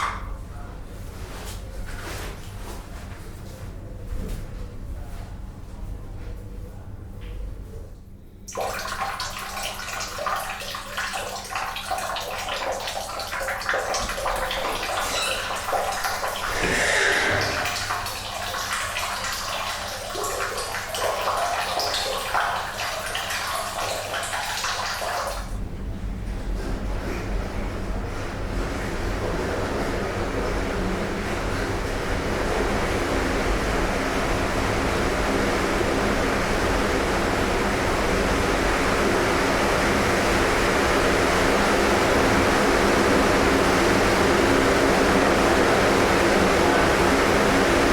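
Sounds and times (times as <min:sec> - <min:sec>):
tap water running and splashing: 0:08.5 - 0:25.6, 0:28.2 - 0:47.9.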